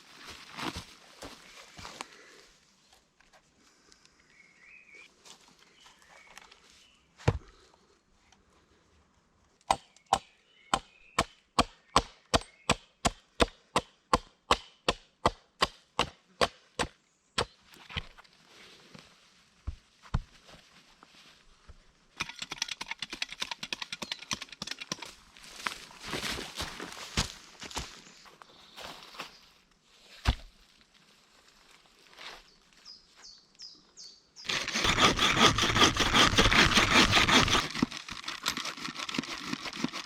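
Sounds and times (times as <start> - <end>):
wood chopping strikes: 7.2 - 7.5, 9.7 - 18.1, 30.2 - 30.5.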